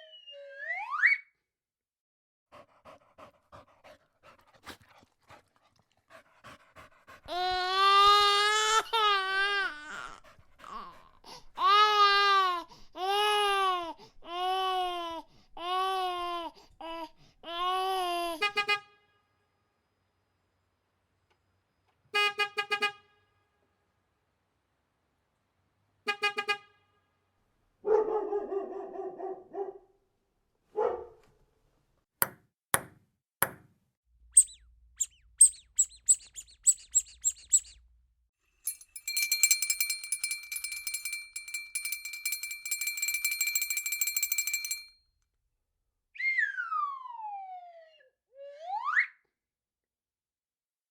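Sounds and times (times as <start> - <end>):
baby crying: 7.3 - 18.4
car horn tooting: 18.4 - 19.0, 22.2 - 23.4, 26.1 - 27.0
dog barking: 27.8 - 30.0, 30.7 - 31.3.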